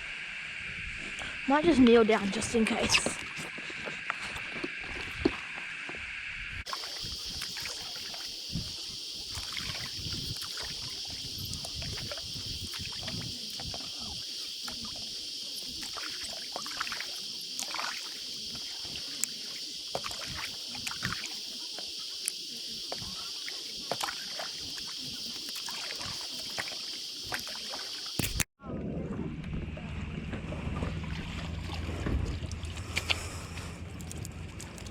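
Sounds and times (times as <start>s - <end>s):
steady high-pitched hiss: 0.0s - 28.5s
paddle splashing: 6.7s - 28.2s, 29.8s - 33.8s
water lapping: 6.7s - 28.2s, 29.7s - 34.9s.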